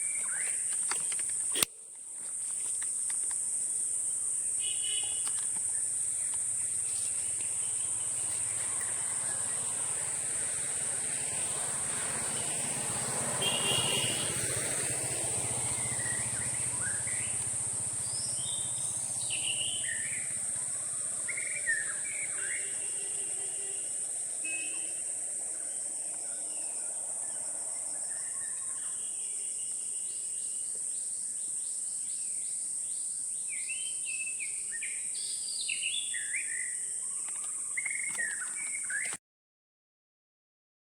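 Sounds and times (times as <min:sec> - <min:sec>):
bird chirps: 0:00.0 - 0:01.4, 0:15.6 - 0:39.2
insect drone: 0:00.0 - 0:39.0.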